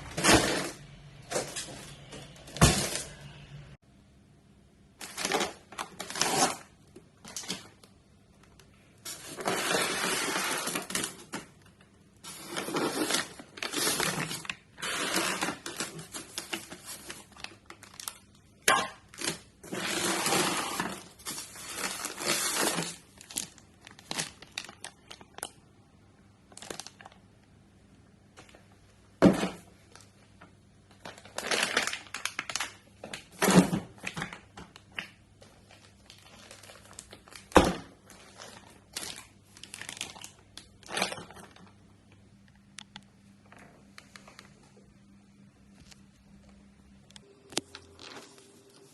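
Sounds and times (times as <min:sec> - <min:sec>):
packaging crinkling and tearing: 0:05.0 - 0:25.7, 0:26.5 - 0:27.2, 0:30.9 - 0:41.8, 0:47.5 - 0:48.9.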